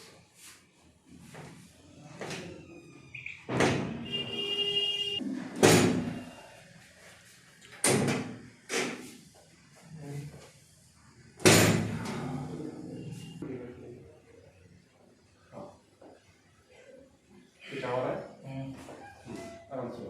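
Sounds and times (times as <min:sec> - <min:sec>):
treatment table squeak: 0:18.8 - 0:19.8.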